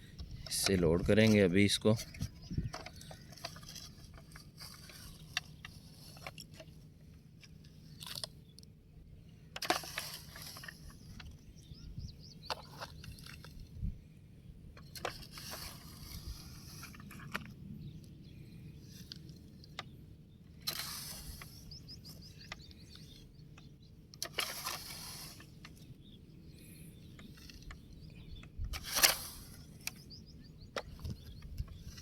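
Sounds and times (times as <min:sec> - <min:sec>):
plastic toys scraping rattles: 0:00.3 - 0:06.8, 0:09.6 - 0:11.4, 0:14.8 - 0:17.6, 0:20.5 - 0:23.2, 0:24.2 - 0:26.0, 0:28.7 - 0:30.1, 0:30.7 - 0:32.0.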